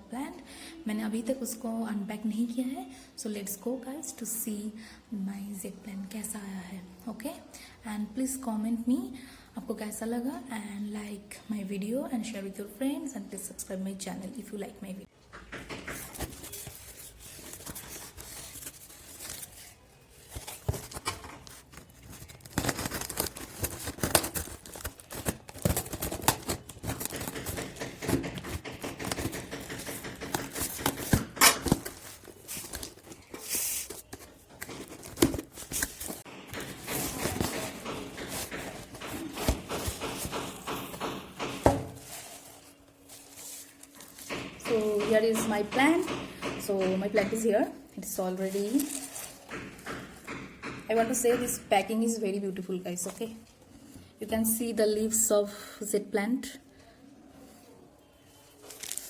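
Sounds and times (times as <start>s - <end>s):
knocks: 15.3s - 16.6s, 26.3s - 32.0s, 36.3s - 42.0s, 44.2s - 47.4s, 49.5s - 51.7s
packaging tearing and crinkling: 16.2s - 40.7s, 48.5s - 49.5s, 58.6s - 59.0s.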